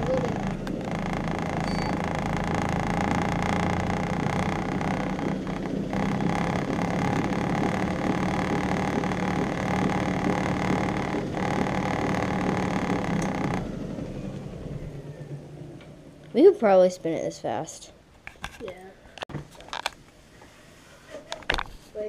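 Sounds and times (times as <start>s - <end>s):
electric appliance motor whining: 0.0s - 16.3s.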